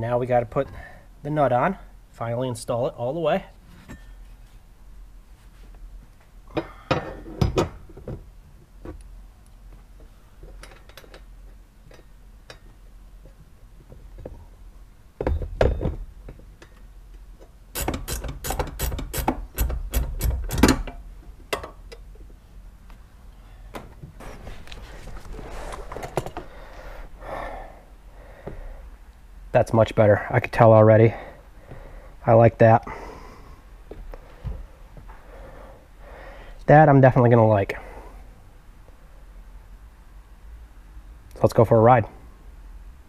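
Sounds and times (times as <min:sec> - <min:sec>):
metal tool clicks and knocks: 0:18.1 - 0:22.1.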